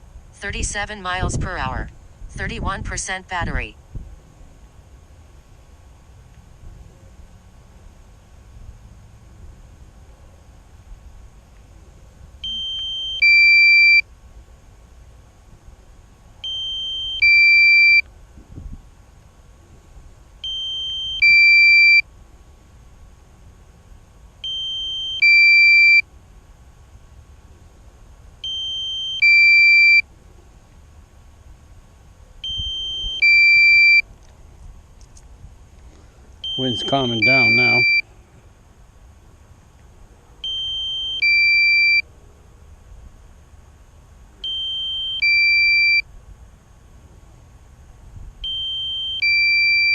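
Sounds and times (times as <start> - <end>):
two-note electronic warning beep: 12.4 - 14.0, 16.4 - 18.0, 20.4 - 22.0, 24.4 - 26.0, 28.4 - 30.0, 32.4 - 34.0, 36.4 - 38.0, 40.4 - 42.0, 44.4 - 46.0, 48.5 - 49.9.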